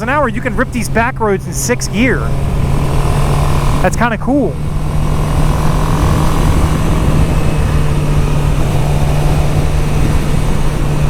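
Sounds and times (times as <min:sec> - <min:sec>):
motorcycle engine droning: 0:00.0 - 0:11.0
wind rush: 0:04.6 - 0:11.0.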